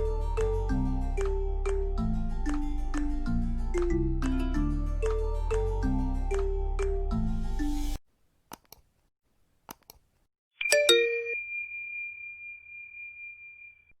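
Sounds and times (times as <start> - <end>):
light mallet-percussion music: 0.0 - 8.0, 10.6 - 11.4
bright high chime ringing: 10.6 - 14.0.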